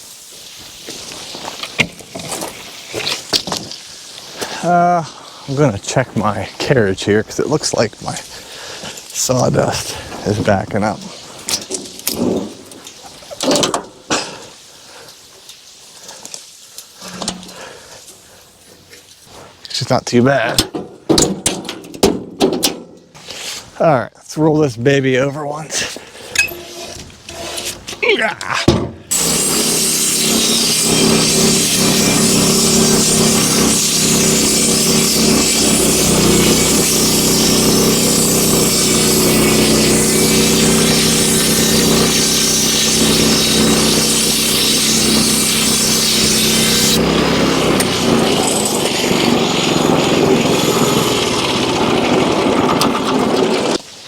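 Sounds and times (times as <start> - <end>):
sawdust scraping rushes: 0.0 - 13.4, 25.4 - 28.0, 29.1 - 54.0
high hiss: 0.0 - 19.8, 29.1 - 51.8
sawmill engine running: 29.1 - 53.8.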